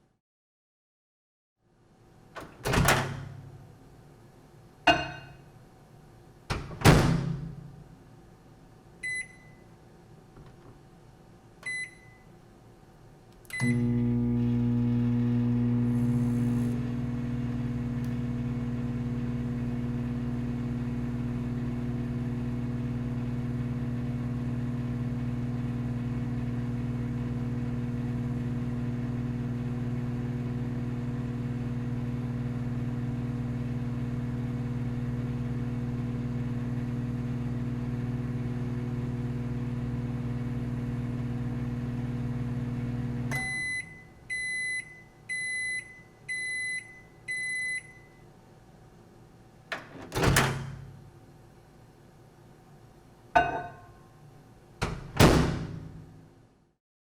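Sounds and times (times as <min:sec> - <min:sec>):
microwave oven humming: 0:04.9 - 0:10.3, 0:10.9 - 0:56.4
microwave keypad beeping: 0:09.0 - 0:09.6, 0:11.6 - 0:12.3, 0:43.3 - 0:48.2
microwave oven click: 0:13.4 - 0:16.9, 0:17.8 - 0:18.4, 0:43.2 - 0:43.9.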